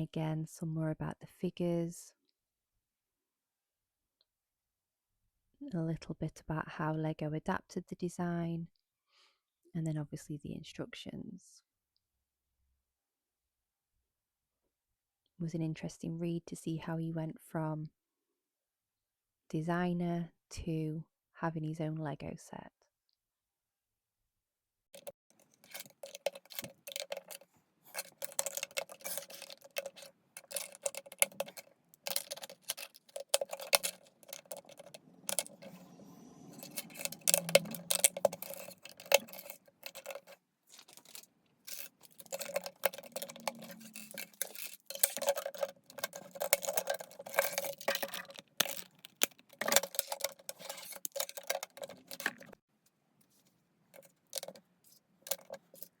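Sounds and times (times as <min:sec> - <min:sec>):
plastic pieces clattering and clicking: 0:25.0 - 0:35.9, 0:36.5 - 0:52.6, 0:54.0 - 0:54.6, 0:55.2 - 0:56.0.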